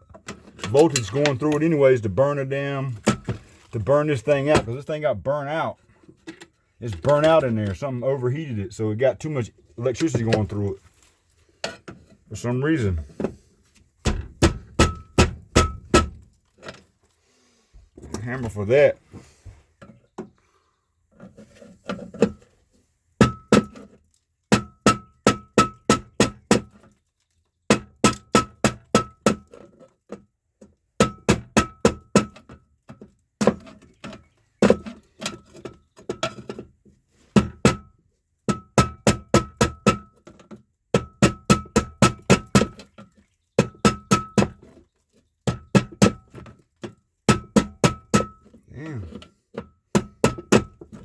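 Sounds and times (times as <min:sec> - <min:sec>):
hammer striking metal box: 0:14.1 - 0:16.2, 0:23.2 - 0:23.8, 0:24.5 - 0:26.7, 0:27.7 - 0:29.5, 0:31.0 - 0:32.6, 0:37.4 - 0:37.9, 0:38.5 - 0:40.2, 0:40.9 - 0:42.8, 0:43.6 - 0:44.6, 0:45.5 - 0:46.4, 0:47.3 - 0:48.5, 0:49.6 - 0:51.0.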